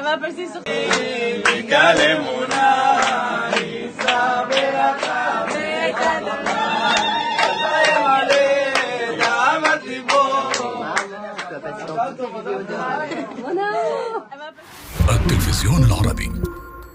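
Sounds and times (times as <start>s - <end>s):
group singing long held notes: 0.6s - 11.4s
sharp rhythmic clapping: 0.8s - 11.5s.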